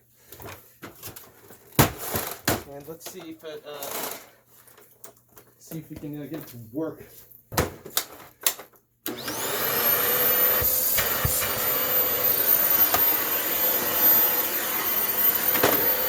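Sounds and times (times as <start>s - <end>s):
vacuum cleaner motor whine: 9.1s - 16.0s.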